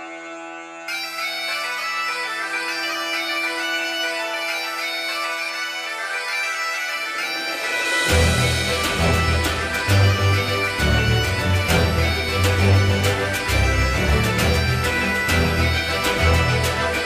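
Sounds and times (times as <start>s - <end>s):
background music with drone: 0.0s - 17.0s.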